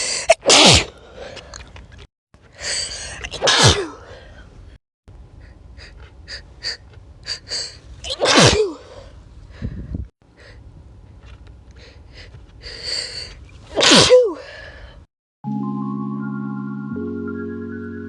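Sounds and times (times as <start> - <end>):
person sneezing: 0.0 - 0.9, 3.2 - 4.1, 8.1 - 9.0, 13.7 - 14.6
quick catching breaths: 8.8 - 10.6, 11.7 - 13.4.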